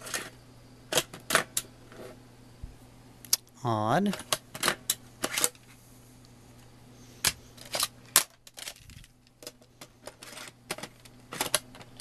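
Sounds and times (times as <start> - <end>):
low electrical hum: 0.0 - 12.0
plastic disks clicking and clacking: 7.6 - 12.0.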